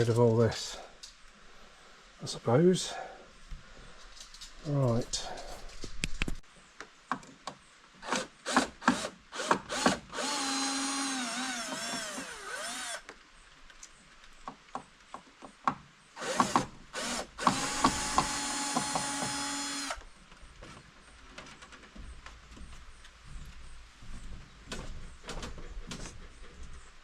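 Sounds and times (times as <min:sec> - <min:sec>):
cordless drill driving screws: 0:08.0 - 0:13.1, 0:16.2 - 0:20.0.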